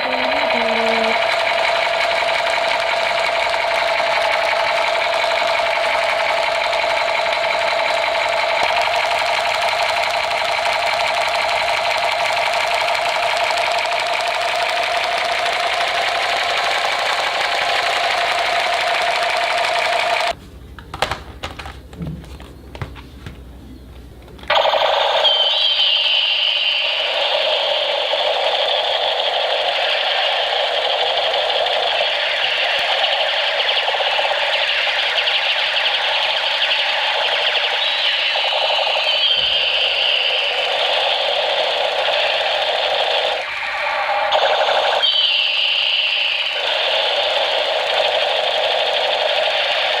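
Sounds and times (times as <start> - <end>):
wavering high tone: 0.0 - 1.2
toy machine gun rattle: 0.0 - 20.4, 26.8 - 43.8, 46.2 - 50.0.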